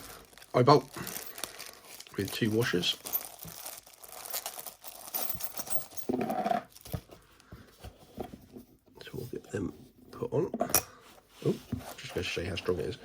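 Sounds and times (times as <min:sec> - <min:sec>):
packaging rustling and crinkling: 0:00.0 - 0:08.3.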